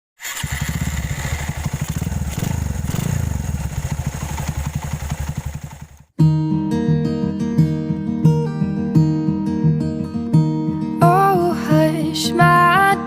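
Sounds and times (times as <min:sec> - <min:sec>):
motorcycle engine running: 0:00.2 - 0:06.2
acoustic guitar music: 0:06.2 - 0:13.0.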